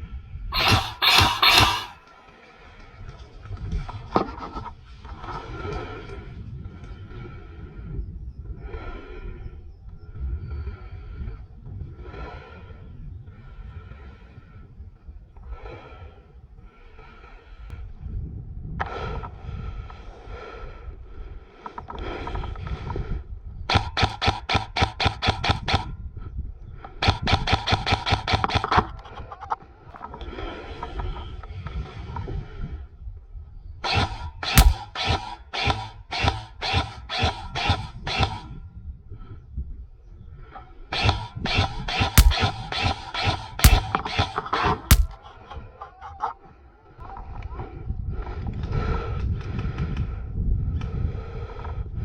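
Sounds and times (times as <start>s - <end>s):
person breathing heavily: 0.6s - 2.0s
airsoft rifle rapid fire: 34.6s - 34.8s, 42.2s - 42.5s, 43.6s - 43.9s, 44.9s - 45.1s.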